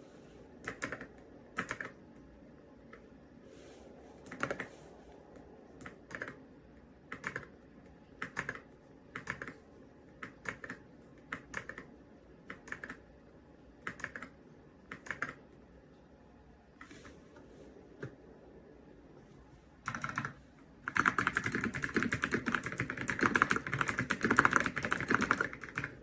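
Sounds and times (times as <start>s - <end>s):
mechanical keyboard typing: 0.6s - 2.0s, 4.2s - 4.7s, 5.8s - 6.4s, 7.1s - 7.6s, 8.2s - 11.9s, 12.5s - 13.0s, 13.8s - 15.4s, 19.8s - 26.0s.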